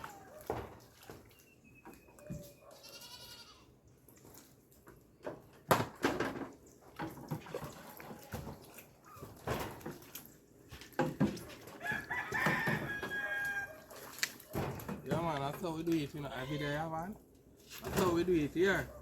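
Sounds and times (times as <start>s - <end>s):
farm animal call: 1.4s - 3.8s, 11.8s - 14.1s, 16.2s - 16.9s
knocks and handling clatter: 4.8s - 13.2s, 14.2s - 16.1s.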